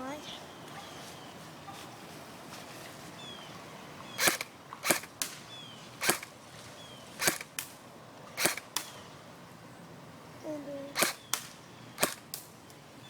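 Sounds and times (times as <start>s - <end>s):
airsoft gun firing single shots: 4.2s - 6.4s, 7.2s - 7.8s, 8.4s - 9.0s, 11.0s - 12.5s.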